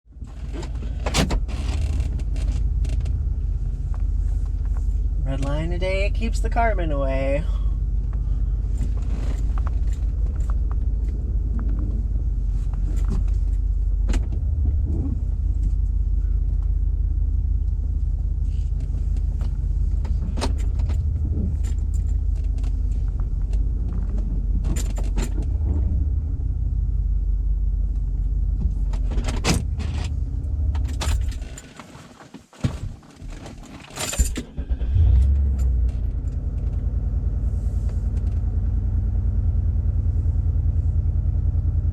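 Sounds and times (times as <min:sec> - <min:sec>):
car exhaust droning in cabin: 0:00.1 - 0:31.7, 0:34.1 - 0:41.9
light rattles and clicks: 0:00.2 - 0:05.7, 0:08.0 - 0:16.8, 0:18.4 - 0:26.2, 0:27.9 - 0:37.0.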